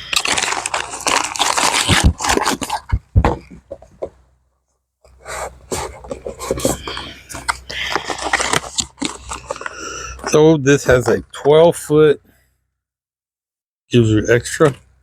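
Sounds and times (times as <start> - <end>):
packaging rustling and crinkling: 0.0 - 4.1, 5.3 - 10.4.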